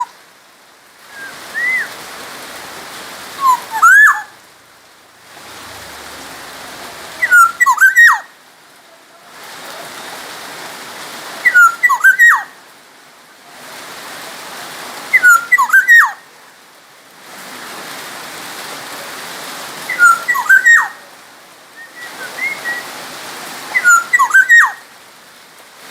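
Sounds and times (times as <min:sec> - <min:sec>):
steady hiss: 0:00.0 - 0:11.6
bird fluty whistled song: 0:01.1 - 0:02.0, 0:03.4 - 0:04.3, 0:07.2 - 0:08.2, 0:11.4 - 0:12.4, 0:15.2 - 0:16.1, 0:19.9 - 0:21.0, 0:21.8 - 0:22.9, 0:23.7 - 0:24.8.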